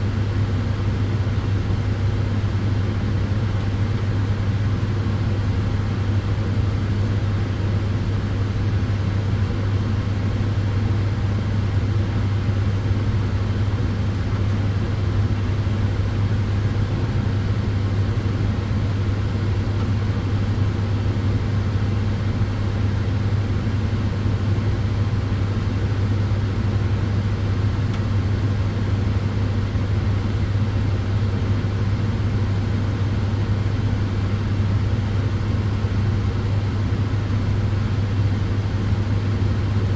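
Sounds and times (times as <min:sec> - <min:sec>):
constant low hum: 0:00.0 - 0:39.9
cooling fans rushing air: 0:00.0 - 0:39.9.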